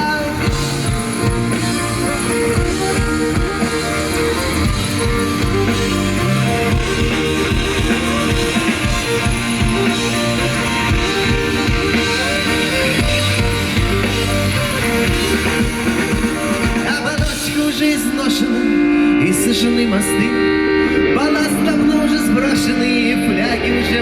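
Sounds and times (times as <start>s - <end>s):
steady drum beat: 0.0s - 17.8s
rock guitar: 0.0s - 24.0s.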